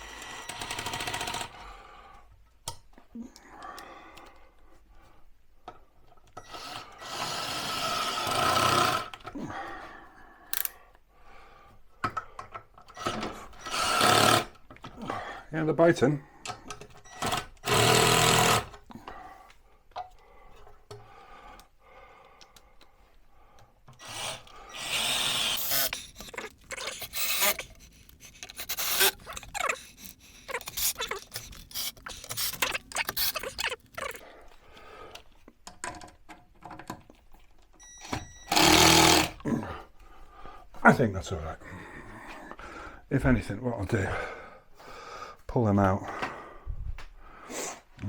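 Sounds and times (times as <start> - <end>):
cordless drill driving screws: 0.0 - 1.6, 6.4 - 9.2, 12.9 - 14.6, 17.1 - 18.8, 23.9 - 34.2, 38.0 - 39.4.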